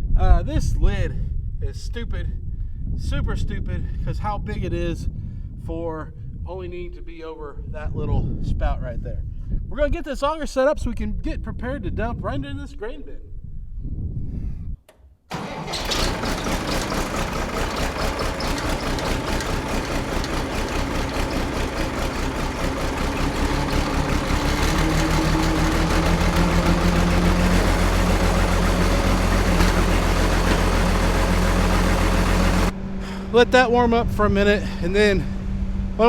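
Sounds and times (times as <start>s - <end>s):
tractor engine idling: 15.3s - 32.7s.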